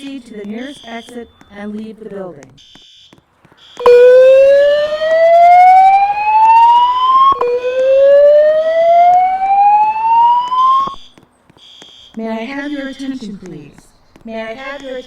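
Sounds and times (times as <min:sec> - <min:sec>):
faint high-pitched alarm beeping: 0:00.0 - 0:01.8, 0:02.6 - 0:12.9
rising whoop alarm tone: 0:03.8 - 0:11.0.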